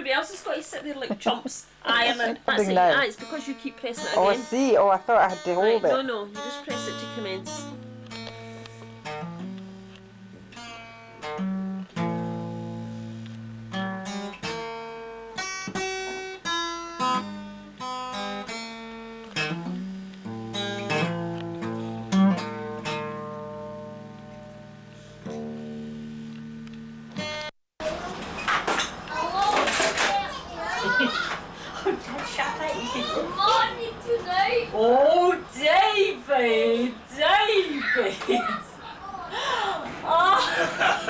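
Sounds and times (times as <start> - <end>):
plucked and strummed guitar: 1.9 - 34.7.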